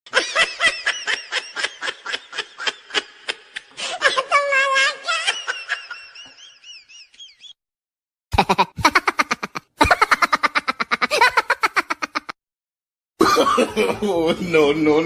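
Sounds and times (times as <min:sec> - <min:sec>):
staccato cackling laugh: 0:08.3 - 0:12.4.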